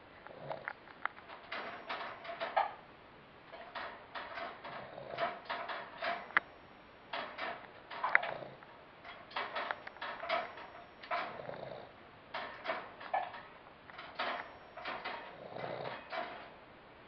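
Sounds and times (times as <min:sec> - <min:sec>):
dog snoring: 0:00.3 - 0:00.7, 0:04.8 - 0:05.3, 0:08.2 - 0:08.6, 0:11.2 - 0:12.0, 0:15.3 - 0:16.1.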